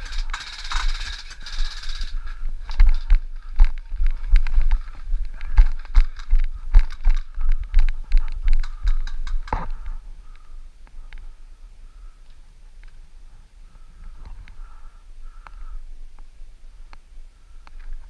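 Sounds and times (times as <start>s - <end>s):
gear clicking and rattling: 0.0s - 10.0s
running footsteps: 0.0s - 10.0s.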